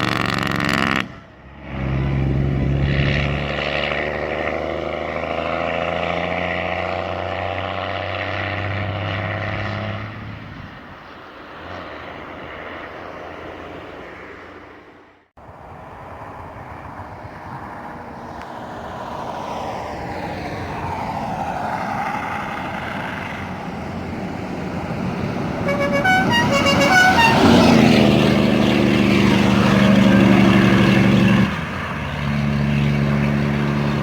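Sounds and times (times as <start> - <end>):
diesel bus engine approaching: 0.0 - 34.0
musical bus horn: 25.5 - 28.3.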